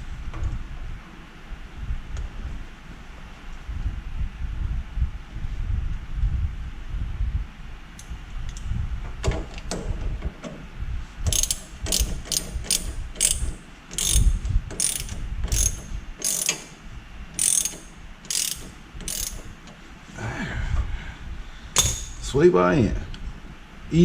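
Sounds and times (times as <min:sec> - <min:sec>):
ratchet wrench clicking: 0:11.3 - 0:16.7, 0:17.4 - 0:19.5.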